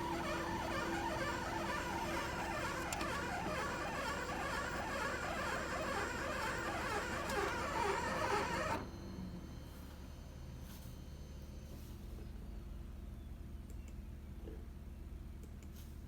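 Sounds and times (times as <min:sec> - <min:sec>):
printer scratchy chatter: 0:00.0 - 0:08.8.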